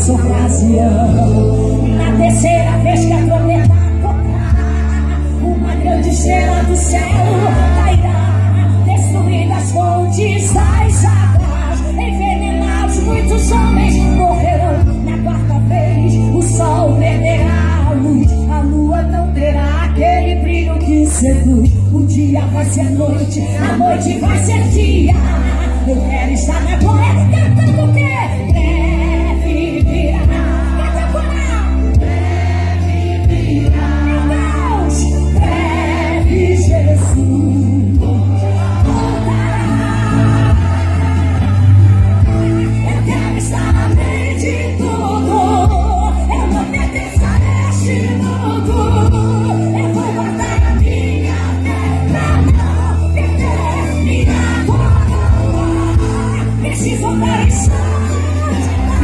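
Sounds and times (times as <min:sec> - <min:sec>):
voices singing like a choir: 0:00.0 - 0:18.1, 0:22.6 - 0:27.4, 0:28.2 - 0:59.0
gospel band playing: 0:00.0 - 0:59.0
heavy bass line: 0:22.7 - 0:59.0.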